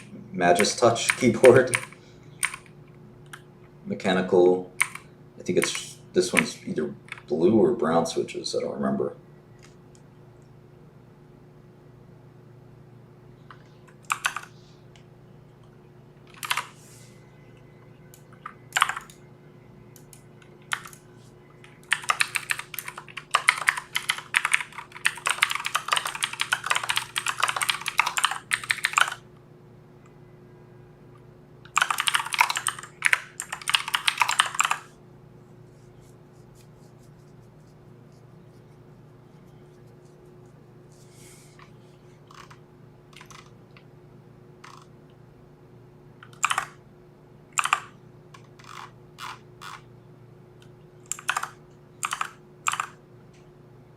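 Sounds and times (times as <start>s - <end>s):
typing on mechanical keyboard: 0.6s - 2.7s, 14.0s - 14.5s, 16.3s - 16.7s, 18.8s - 19.2s, 21.7s - 29.2s, 31.7s - 34.9s, 42.3s - 43.5s, 46.2s - 46.8s, 47.6s - 47.9s, 48.6s - 49.8s, 51.1s - 53.0s.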